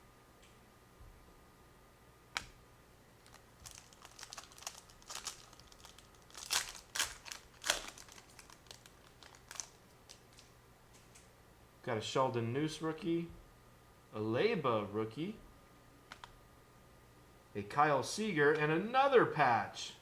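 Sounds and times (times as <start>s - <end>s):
foil wrapper crinkling and tearing: 3.2s - 10.5s.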